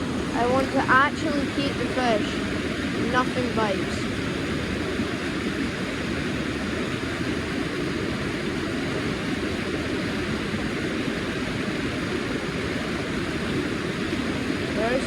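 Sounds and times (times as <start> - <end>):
steady rushing noise: 0.0 - 15.0.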